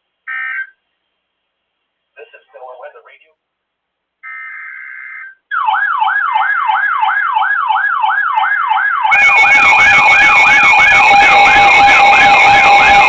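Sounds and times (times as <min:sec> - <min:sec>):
yelp siren alert tone: 0:04.2 - 0:13.0
steady tones: 0:09.2 - 0:13.0.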